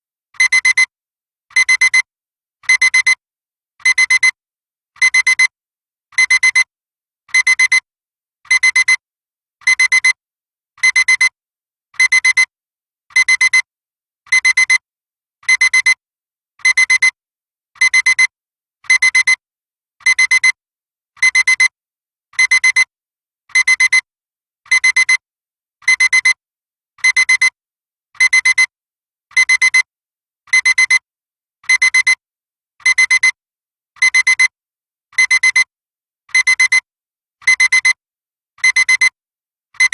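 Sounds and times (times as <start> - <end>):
digital alarm clock beeping: 21.2 - 21.7, 22.4 - 22.9, 29.4 - 29.9, 31.7 - 32.2, 32.8 - 33.4, 34.0 - 34.5, 35.2 - 35.7, 36.3 - 38.0, 38.6 - 39.2.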